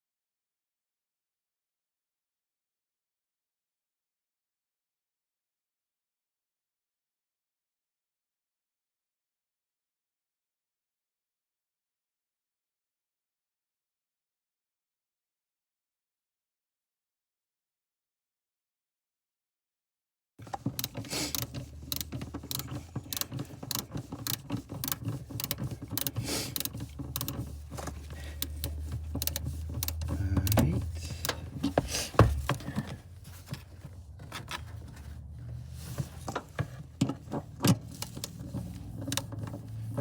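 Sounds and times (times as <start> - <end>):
clicks and taps of hand tools: 20.5 - 33.6
low steady hum: 26.7 - 36.3.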